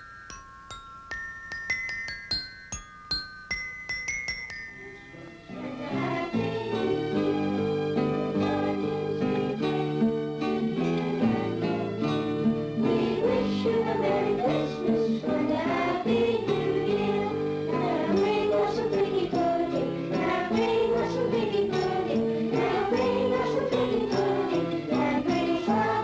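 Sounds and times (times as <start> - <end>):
sleigh bells ringing: 0.0 - 5.4
choir singing: 5.5 - 9.9, 10.6 - 26.0.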